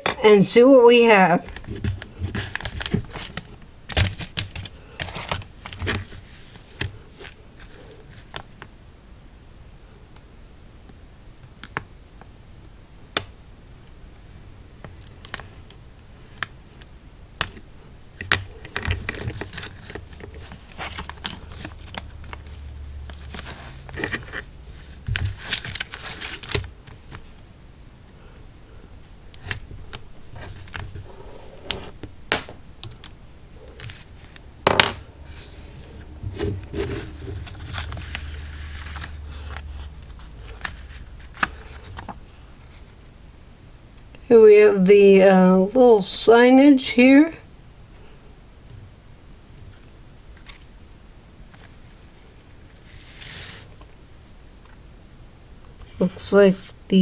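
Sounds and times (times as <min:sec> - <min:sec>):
packaging rustling: 0:01.5 - 0:08.4, 0:17.4 - 0:27.4, 0:29.2 - 0:42.9.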